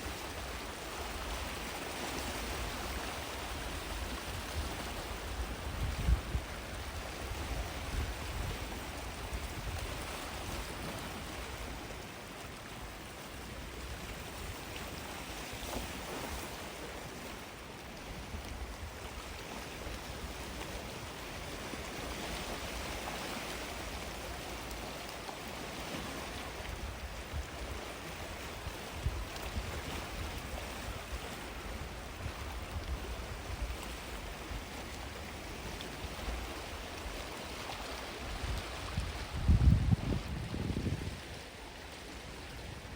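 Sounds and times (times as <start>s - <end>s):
waves washing onto a beach: 0.0s - 42.9s
wind rumbling on microphone: 2.2s - 12.0s, 26.5s - 42.9s.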